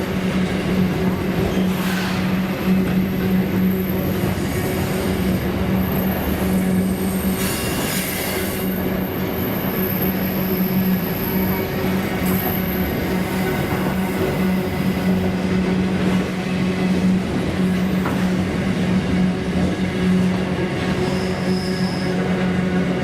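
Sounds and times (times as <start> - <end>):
freight train wagons rumbling: 0.0 - 23.0
high wheel squeal: 21.0 - 22.4.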